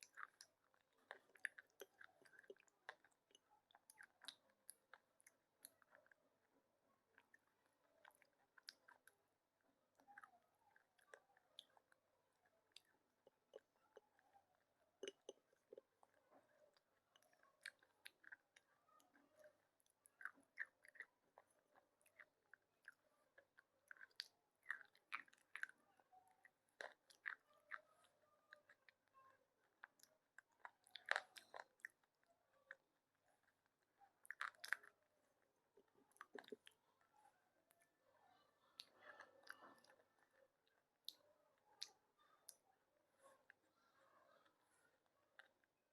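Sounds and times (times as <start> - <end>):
person chewing crunchy pencils: 0.0 - 6.5, 7.1 - 35.2, 35.8 - 36.8.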